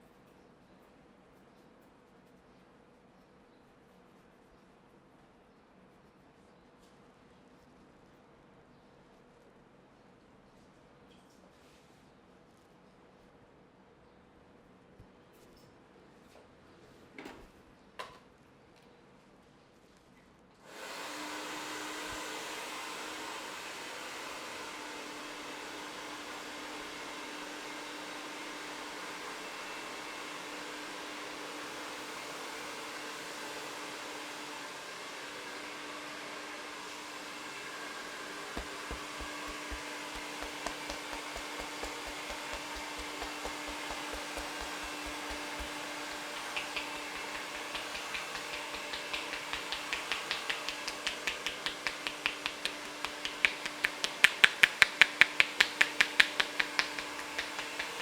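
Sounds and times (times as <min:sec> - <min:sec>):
sharp ticks: 0:38.6 - 0:58.0.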